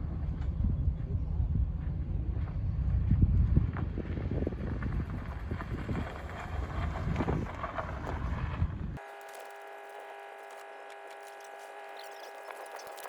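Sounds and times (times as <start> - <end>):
wind buffeting microphone: 0.0 - 9.0
steady hum of held tones: 8.6 - 13.0.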